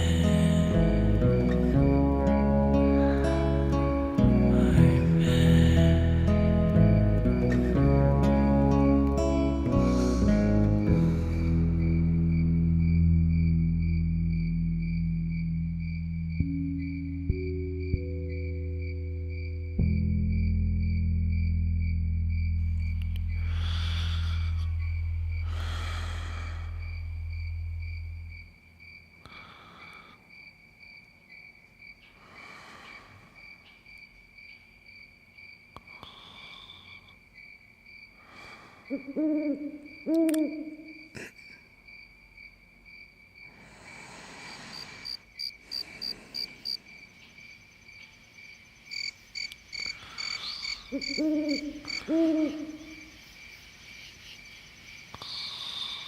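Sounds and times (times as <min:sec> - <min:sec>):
person snoring: 0:00.0 - 0:01.8, 0:04.3 - 0:06.4, 0:09.8 - 0:11.8, 0:23.4 - 0:27.1
crickets chirring: 0:00.0 - 0:56.0
owl hooting: 0:38.8 - 0:41.0, 0:49.8 - 0:53.1.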